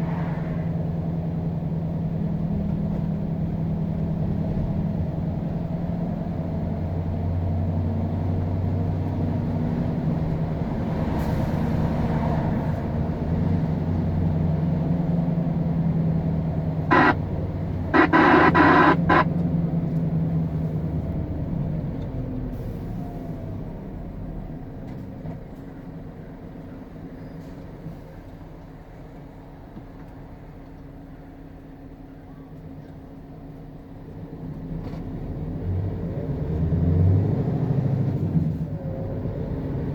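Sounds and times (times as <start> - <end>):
diesel truck engine pulling: 1.0 - 19.4
truck horn blasts: 16.9 - 19.3.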